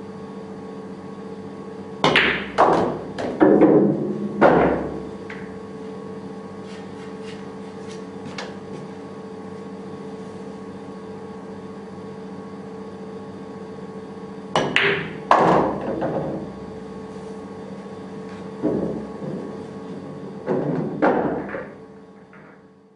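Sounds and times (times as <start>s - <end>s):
steady background hum: 0.0s - 22.9s.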